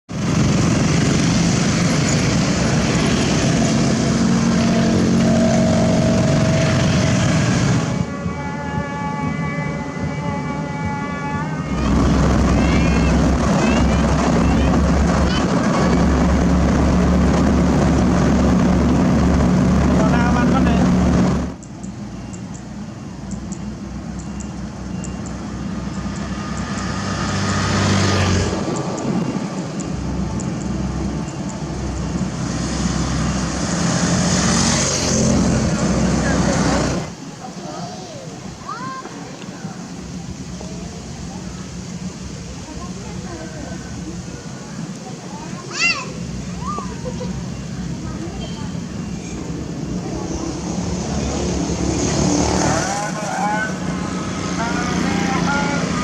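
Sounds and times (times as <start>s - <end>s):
diesel engine running under load: 0.1s - 8.1s, 11.7s - 37.4s
steady whine: 11.6s - 21.6s.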